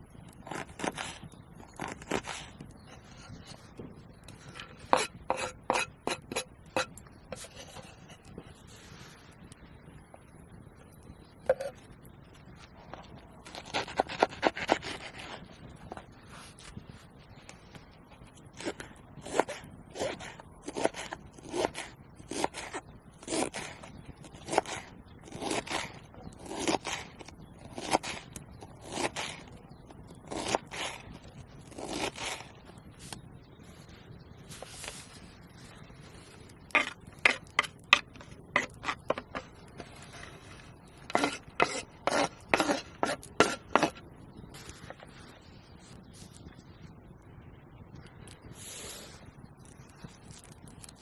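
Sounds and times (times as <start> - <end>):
hand tool scraping wood: 4.5 - 8.2, 13.6 - 15.4, 18.6 - 23.8, 24.5 - 27.2, 28.8 - 29.4, 30.3 - 31.0, 31.7 - 32.5, 36.7 - 44.0.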